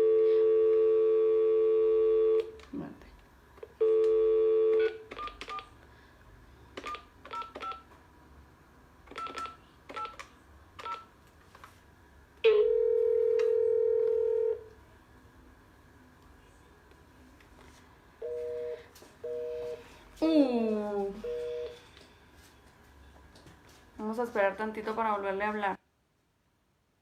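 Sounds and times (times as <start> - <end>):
telephone dial tone: 0.0 - 2.5, 3.8 - 5.6, 12.5 - 14.7, 21.2 - 21.8
keypad touch-tone beeps: 4.7 - 5.7, 6.8 - 7.9, 9.1 - 10.2, 10.8 - 11.1.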